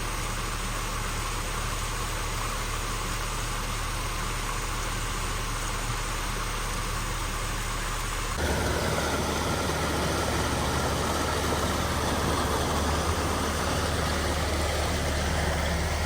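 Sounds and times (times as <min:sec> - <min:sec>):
low engine drone: 0:08.4 - 0:16.0
tyre and road noise: 0:08.4 - 0:16.0.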